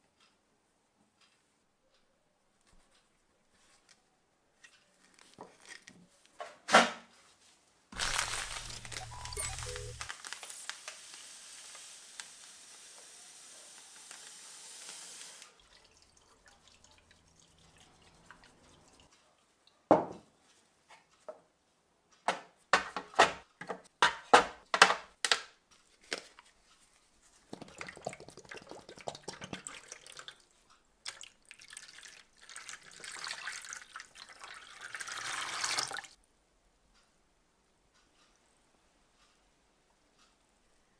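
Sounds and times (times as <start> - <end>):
handling noise: 8.0 - 10.6
water running: 8.0 - 11.1, 12.9 - 19.1, 27.5 - 30.5, 31.1 - 36.2.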